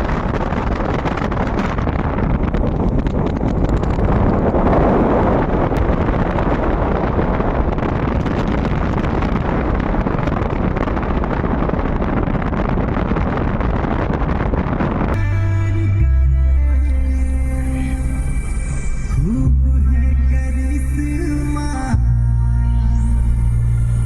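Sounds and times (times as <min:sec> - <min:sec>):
loud rushing noise: 0:00.0 - 0:16.0, 0:20.9 - 0:24.0
wind buffeting microphone: 0:00.0 - 0:24.0
music: 0:15.2 - 0:24.0.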